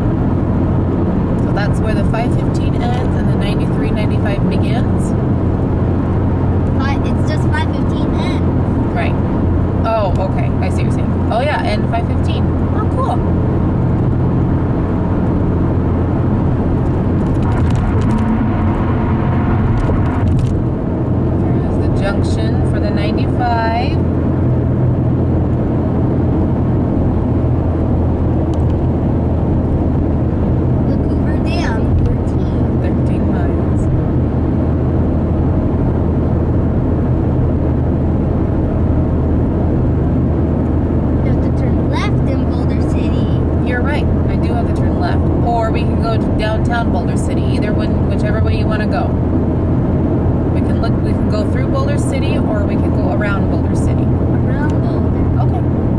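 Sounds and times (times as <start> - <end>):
road and engine noise in car: 0.0 - 55.9.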